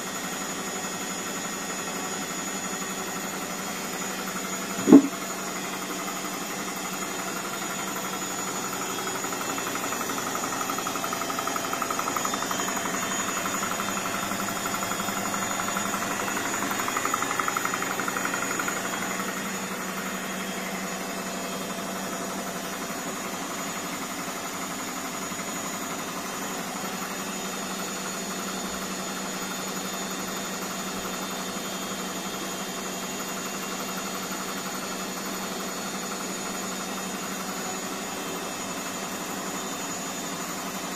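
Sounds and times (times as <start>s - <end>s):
washing machine spinning: 0.0s - 40.9s.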